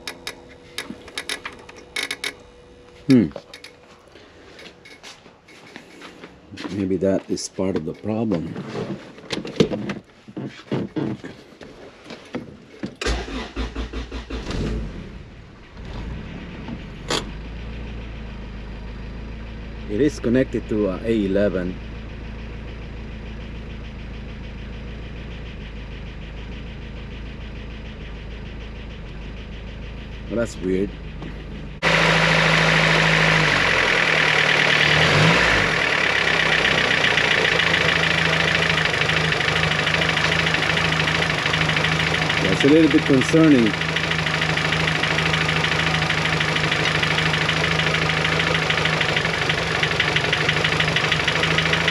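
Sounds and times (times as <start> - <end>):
car engine starting and idling: 0.0 - 10.0, 12.5 - 51.9
light engine ticking: 35.9 - 51.9.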